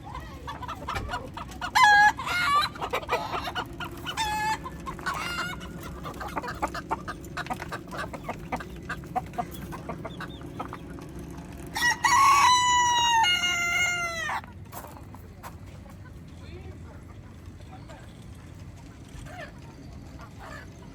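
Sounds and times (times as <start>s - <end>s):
roosters clucking: 0.0s - 20.9s
rooster crowing: 11.8s - 14.4s.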